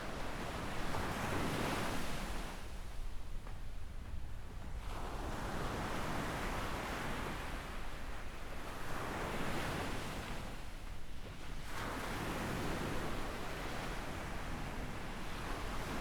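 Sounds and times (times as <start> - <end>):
small waves breaking on shore: 4.8 - 16.0.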